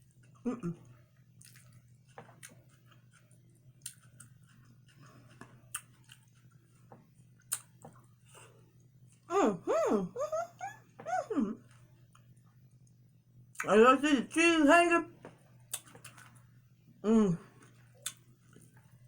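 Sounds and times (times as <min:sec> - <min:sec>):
close chewing and mouth sounds: 0:00.0 - 0:09.3, 0:10.9 - 0:13.7, 0:15.2 - 0:16.6, 0:17.4 - 0:19.0
steady low hum: 0:00.0 - 0:19.0
person humming mmm: 0:00.5 - 0:00.8, 0:09.3 - 0:11.7, 0:17.0 - 0:17.5.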